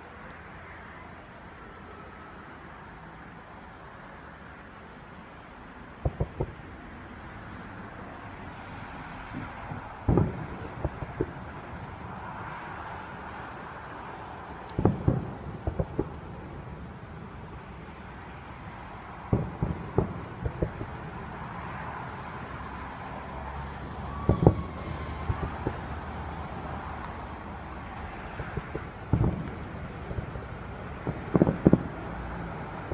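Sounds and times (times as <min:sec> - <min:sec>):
road traffic noise: 0:00.0 - 0:32.9
distant fireworks booming: 0:06.0 - 0:07.0, 0:08.9 - 0:22.4, 0:24.0 - 0:32.9.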